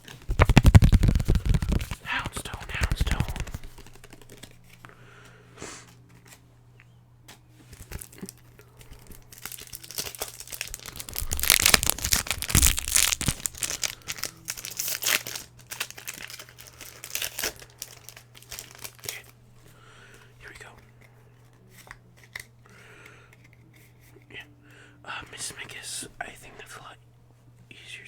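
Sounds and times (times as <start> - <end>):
foil wrapper crinkling and tearing: 0.0 - 4.7, 7.7 - 19.4.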